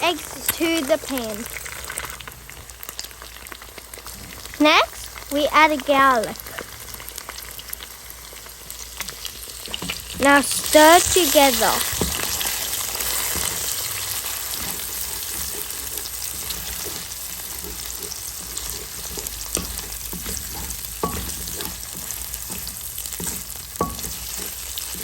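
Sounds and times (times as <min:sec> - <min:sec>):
food sizzling in frying pan: 0:00.0 - 0:25.0
utensil scraping pan: 0:09.7 - 0:25.0.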